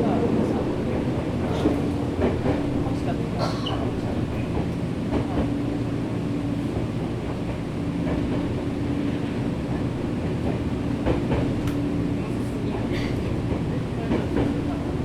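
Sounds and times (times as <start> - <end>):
train wheels rumbling on rail: 0.0 - 15.0.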